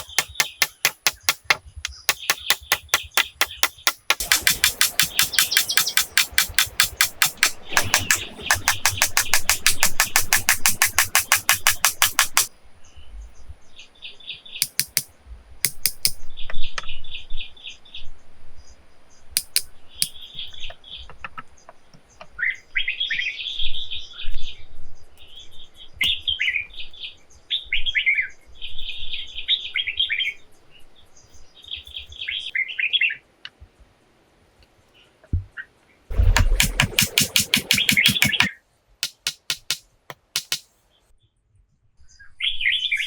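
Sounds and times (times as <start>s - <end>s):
small birds chirping: 0.0s - 9.1s
sharp clicks: 0.0s - 12.5s, 14.6s - 15.1s, 19.4s - 20.2s, 36.1s - 40.6s.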